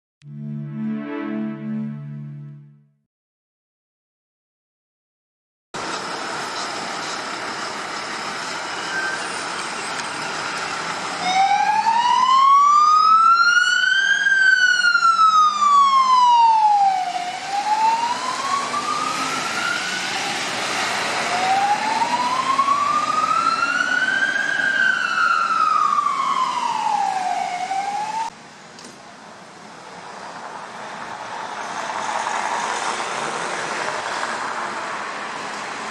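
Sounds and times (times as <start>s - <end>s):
road and engine noise: 5.8s - 35.9s
fire engine siren wailing: 7.3s - 28.3s.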